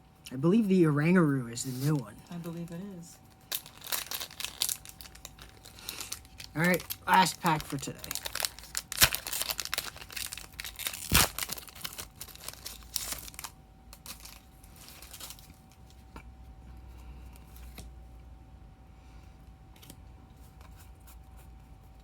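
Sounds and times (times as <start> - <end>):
foil wrapper crinkling: 1.7 - 16.1
foil wrapper ripping: 3.4 - 15.8.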